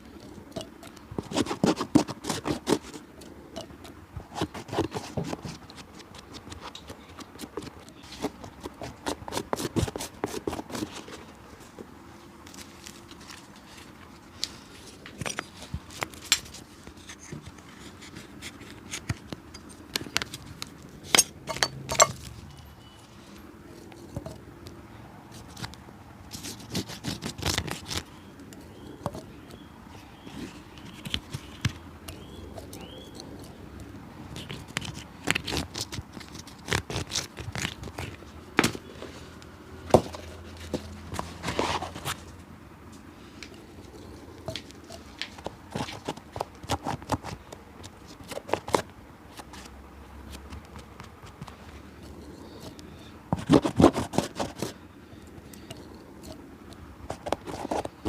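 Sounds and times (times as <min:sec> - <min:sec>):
hand tools tapping and scraping shoe: 0:00.1 - 0:11.3, 0:14.4 - 0:23.0, 0:25.3 - 0:33.6, 0:42.9 - 0:49.7, 0:50.3 - 0:58.0.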